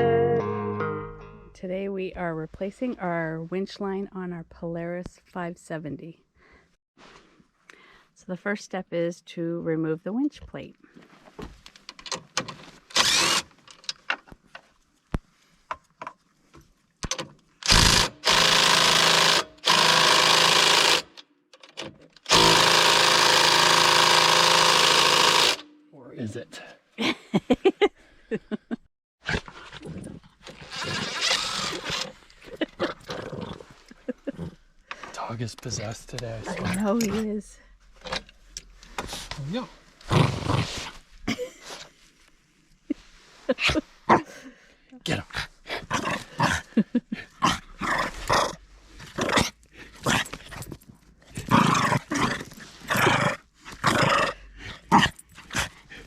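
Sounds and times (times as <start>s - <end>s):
dog growling raspy: 29.3s - 34.6s, 45.2s - 50.6s, 51.3s - 56.0s.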